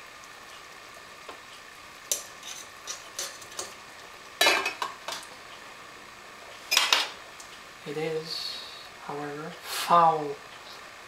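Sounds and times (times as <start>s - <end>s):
utensils clicking against dishes: 2.1s - 3.8s.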